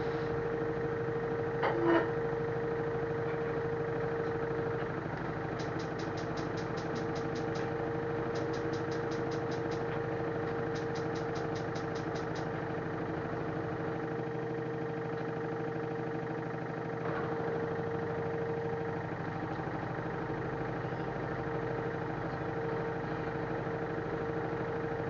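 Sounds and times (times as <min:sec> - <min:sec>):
washing machine spinning: 0:00.0 - 0:25.0
rapid high ticking: 0:05.5 - 0:12.5.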